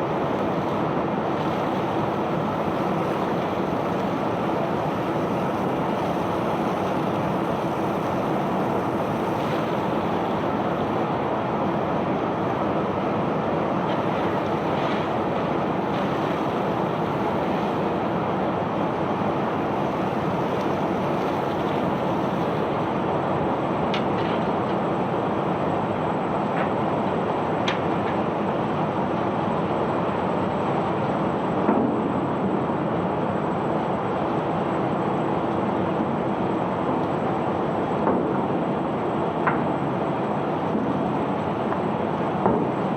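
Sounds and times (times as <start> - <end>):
machinery and pouring sand: 0.0 - 23.2.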